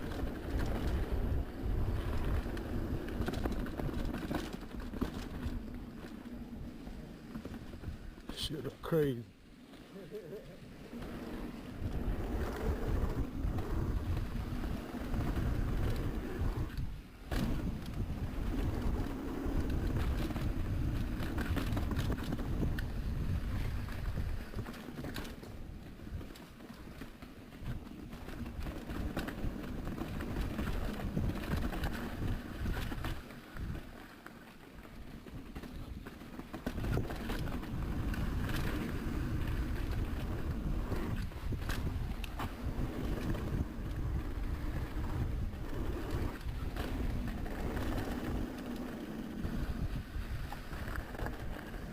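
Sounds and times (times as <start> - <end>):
wind buffeting microphone: 0.0 - 8.2, 11.0 - 34.0, 34.9 - 51.9
bike rattling over rough ground: 0.0 - 51.9.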